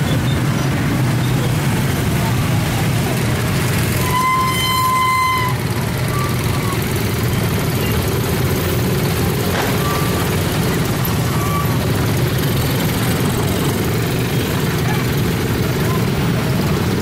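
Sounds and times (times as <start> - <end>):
low rumble of vehicle engines: 0.0 - 17.0.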